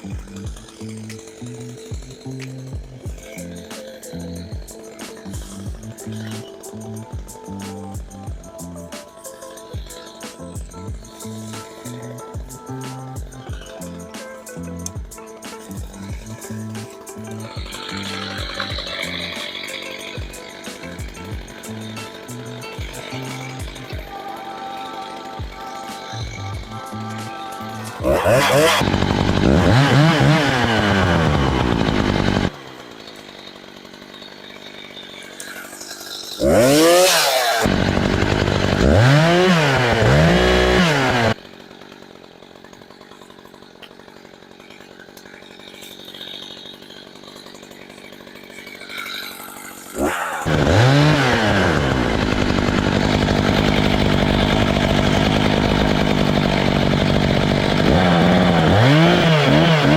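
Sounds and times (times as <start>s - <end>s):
chainsaw revving: 0.0s - 59.9s.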